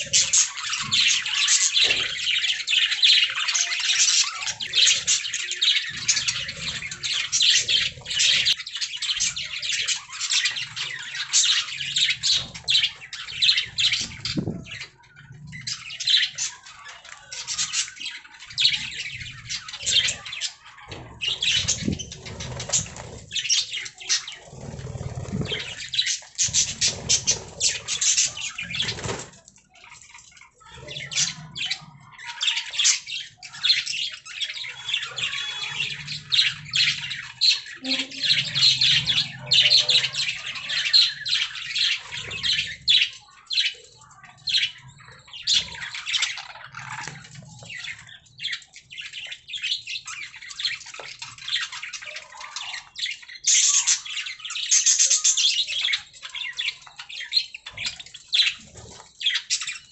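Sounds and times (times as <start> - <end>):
budgerigars chirping: 32.5 - 59.9.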